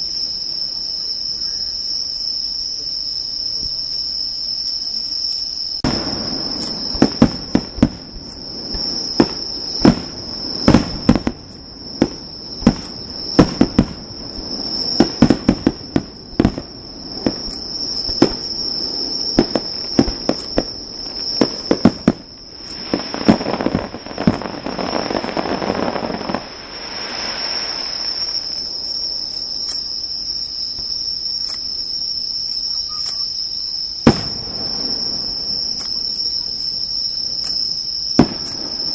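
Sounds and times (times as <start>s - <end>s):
insects chirring: 0.0s - 38.9s
fireworks bangs: 5.8s - 31.2s, 34.0s - 38.9s.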